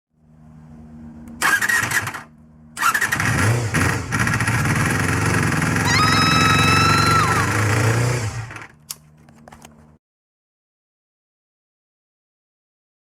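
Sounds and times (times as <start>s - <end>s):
engine revving: 1.3s - 8.8s
engine cranking and starting: 1.4s - 8.8s
high whistling whine: 5.8s - 7.8s.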